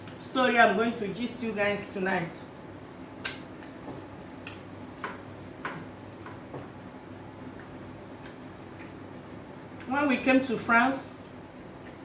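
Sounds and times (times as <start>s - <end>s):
low steady hum: 0.0s - 12.0s
mouth chewing and lip-smacks: 3.2s - 4.7s, 7.5s - 9.1s, 11.8s - 12.0s.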